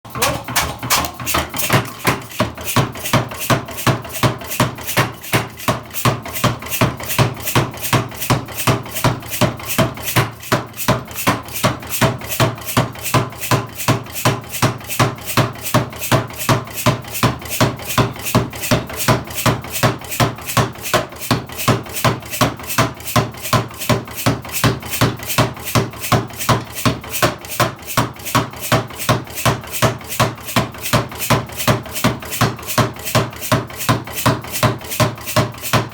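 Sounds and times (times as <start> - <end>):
power hammer striking: 0.1 - 6.2.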